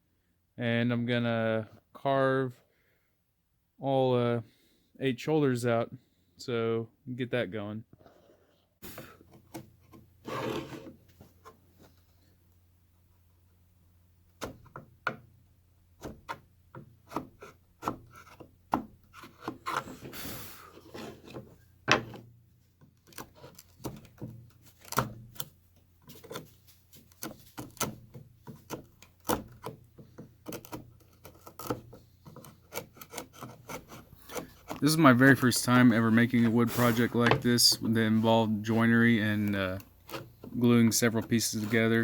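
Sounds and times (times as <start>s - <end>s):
chisel knocking and scraping wood: 14.4s - 15.4s, 16.0s - 20.1s, 20.7s - 42.0s.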